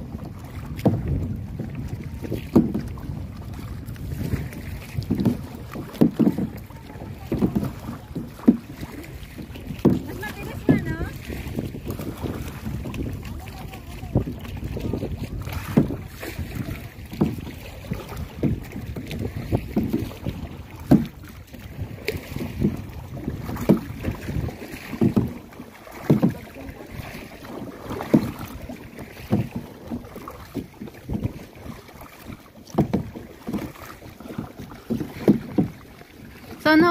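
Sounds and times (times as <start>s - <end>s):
kayak paddle splashing in water: 0.0s - 36.9s.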